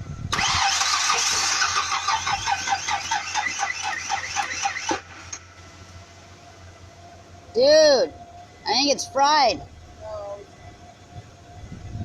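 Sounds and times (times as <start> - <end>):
car drive belt screeching: 0.3 - 6.2.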